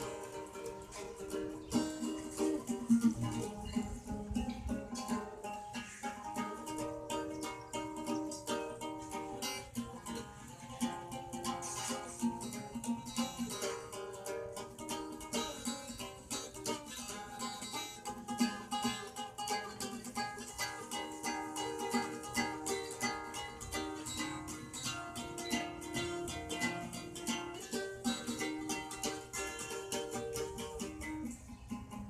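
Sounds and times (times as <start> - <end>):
guitar picked notes and chords: 0.0 - 32.0.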